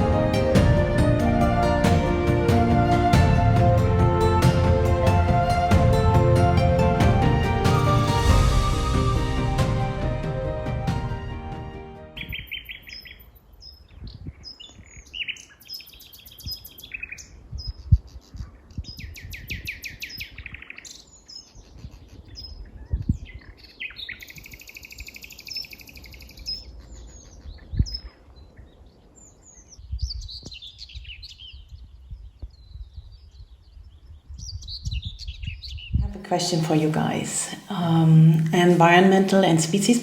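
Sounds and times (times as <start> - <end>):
music: 0.0 - 12.4
songbirds singing: 12.2 - 40.0.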